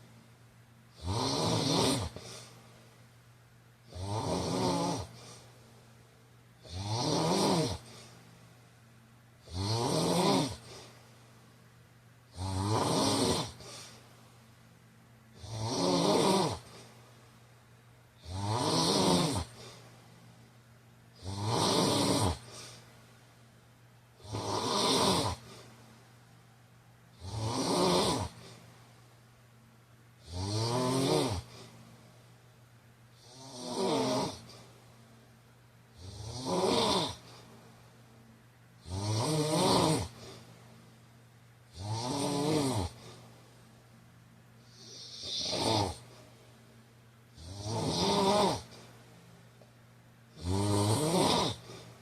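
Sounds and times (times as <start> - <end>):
man snoring: 0.9 - 2.5, 3.9 - 5.4, 6.6 - 8.0, 9.4 - 10.8, 12.3 - 13.9, 15.4 - 16.8, 18.2 - 19.8, 21.2 - 22.8, 24.2 - 25.7, 27.2 - 28.6, 30.2 - 31.7, 33.2 - 34.6, 36.0 - 37.4, 38.8 - 40.4, 41.7 - 43.2, 44.7 - 46.2, 47.4 - 48.9, 50.3 - 51.9.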